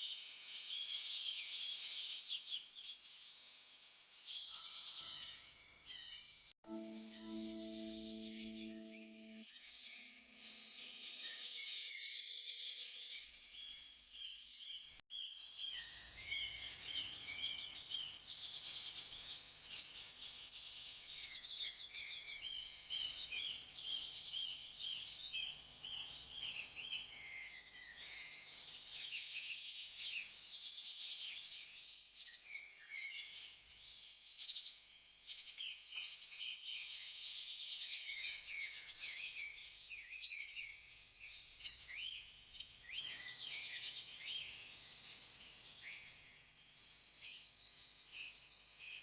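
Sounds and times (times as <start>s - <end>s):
small birds chirping in chorus: 0.0s - 49.0s.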